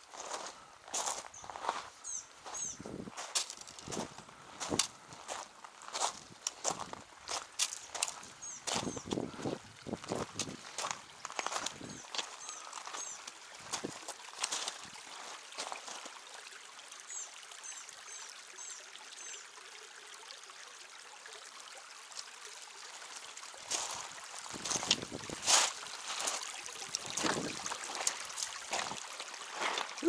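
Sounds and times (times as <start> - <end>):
creek water trickling: 0.0 - 30.0
feet splashing through water: 0.1 - 16.1, 23.7 - 30.0
bird chirps: 1.4 - 2.8, 7.9 - 9.1, 11.8 - 13.2.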